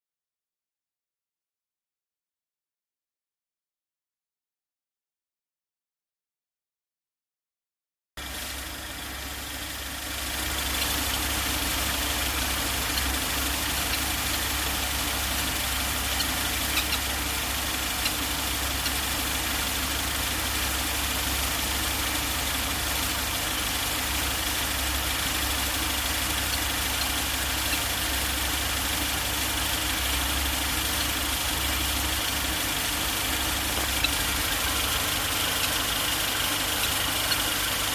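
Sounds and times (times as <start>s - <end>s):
car engine idling: 8.2s - 37.9s
sharp engine ticks: 10.3s - 37.9s.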